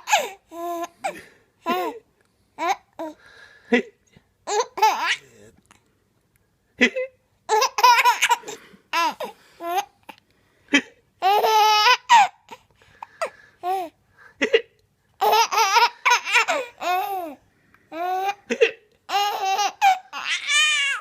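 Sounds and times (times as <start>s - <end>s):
baby giggling: 0.0s - 2.0s, 4.5s - 5.3s, 6.8s - 9.9s, 10.7s - 12.6s, 13.6s - 21.0s.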